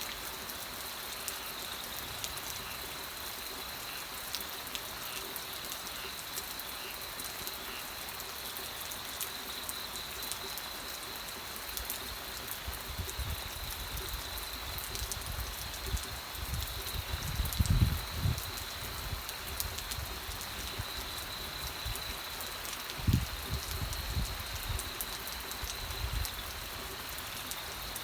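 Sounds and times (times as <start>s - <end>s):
raindrops ticking on surface: 0.0s - 28.0s
steady rain: 0.0s - 28.0s.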